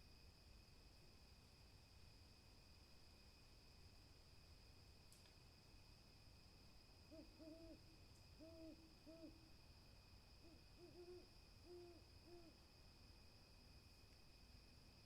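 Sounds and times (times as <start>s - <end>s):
owl hooting: 7.1s - 9.5s, 10.4s - 12.6s.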